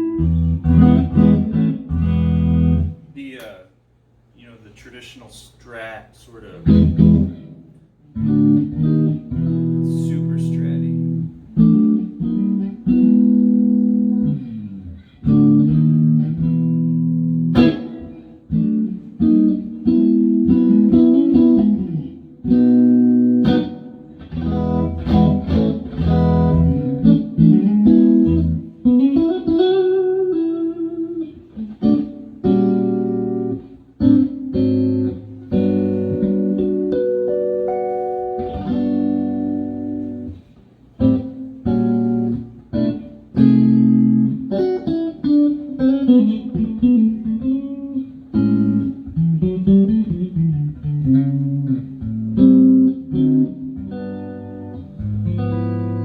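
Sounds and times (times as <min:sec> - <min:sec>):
clean electric guitar: 0:00.0 - 0:03.8, 0:06.6 - 0:56.0.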